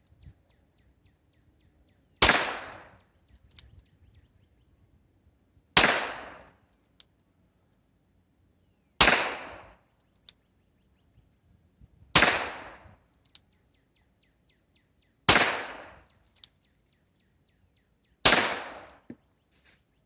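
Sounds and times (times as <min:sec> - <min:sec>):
revolver shots echoing: 0:18.3 - 0:19.0.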